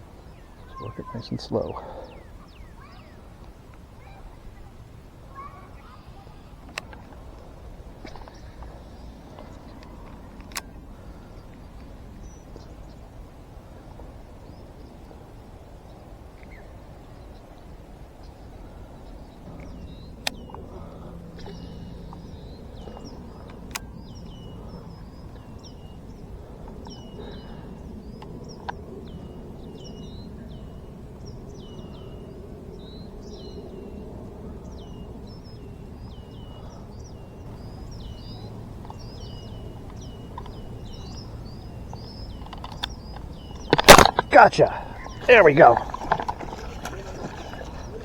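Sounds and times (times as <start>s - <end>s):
low outdoor background noise: 0.0s - 48.0s
small birds chirping: 0.0s - 48.0s
sharp clicks: 37.5s - 46.5s.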